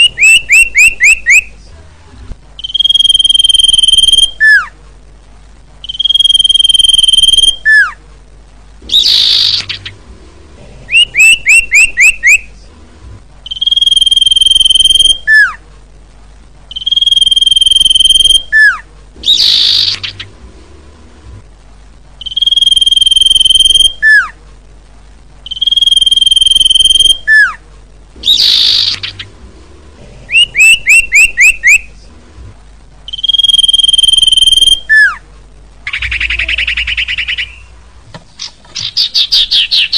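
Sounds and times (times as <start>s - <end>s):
bird calling: 0.0s - 1.5s, 2.6s - 4.8s, 5.8s - 8.0s, 8.8s - 10.0s, 10.9s - 12.5s, 13.5s - 15.6s, 16.7s - 20.4s, 22.2s - 24.4s, 25.5s - 27.6s, 28.2s - 29.4s, 30.3s - 31.9s, 33.1s - 35.2s, 35.8s - 39.9s.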